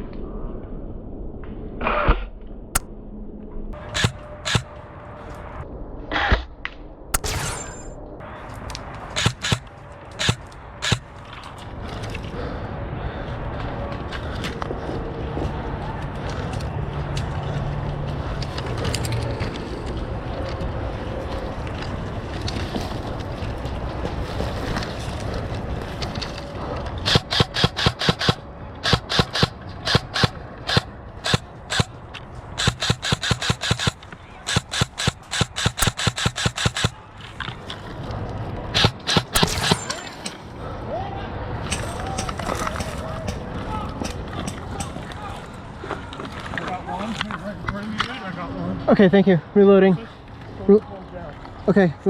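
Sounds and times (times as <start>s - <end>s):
steady background noise: 2.4s - 52.0s
airsoft rifle rapid shots: 3.8s - 4.7s, 9.2s - 11.1s, 27.0s - 32.0s, 32.6s - 37.0s, 38.8s - 40.1s.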